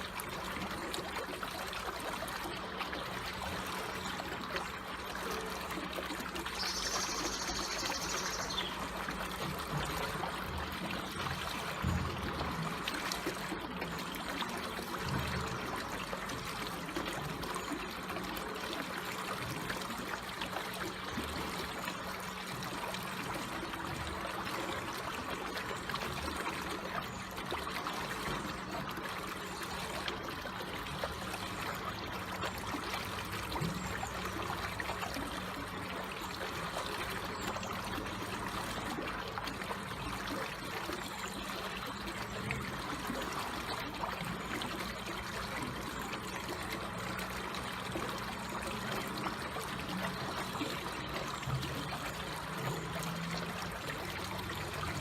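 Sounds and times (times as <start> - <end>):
gentle trickling stream: 0.0 - 55.0.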